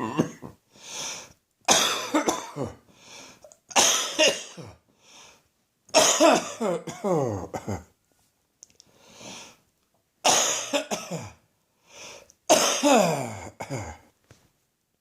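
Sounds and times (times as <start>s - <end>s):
person coughing: 0.0s - 0.6s, 1.7s - 2.9s, 3.7s - 4.8s, 6.0s - 7.9s, 10.3s - 11.4s, 12.5s - 14.1s
sharp in-breaths: 0.8s - 1.4s, 8.9s - 9.6s, 11.8s - 12.3s.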